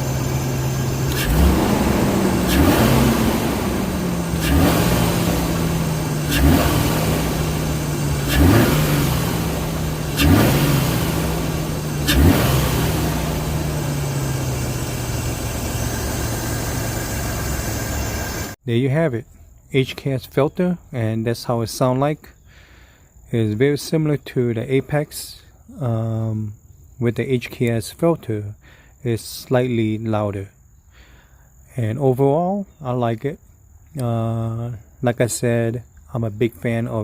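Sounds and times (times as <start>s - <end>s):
car engine idling: 0.0s - 18.6s
engine throttle blips: 0.0s - 18.6s.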